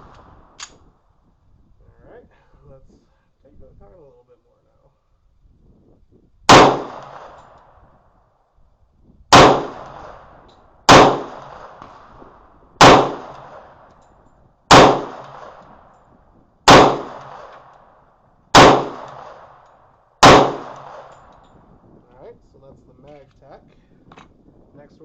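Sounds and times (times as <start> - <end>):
pistol shots with echo: 6.5 - 7.8, 9.3 - 13.9, 14.7 - 15.9, 16.7 - 17.9, 18.5 - 19.6, 20.2 - 21.4.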